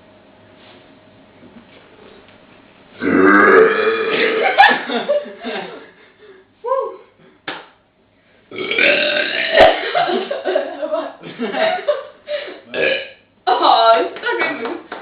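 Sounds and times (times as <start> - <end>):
person burping: 3.0 - 4.6, 8.5 - 9.9, 12.7 - 13.2.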